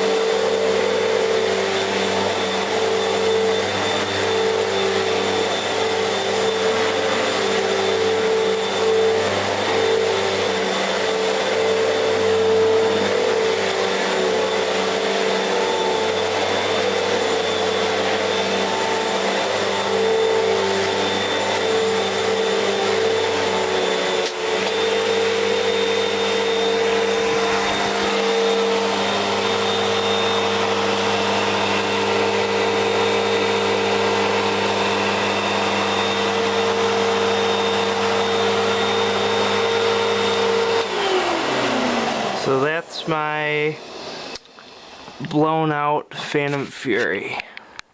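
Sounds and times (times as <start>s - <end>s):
vacuum cleaner running: 0.0s - 46.6s.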